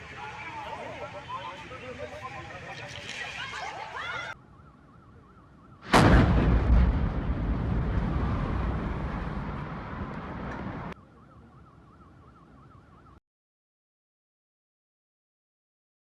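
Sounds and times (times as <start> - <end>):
explosion blast and rumbling roar: 5.8 - 11.0.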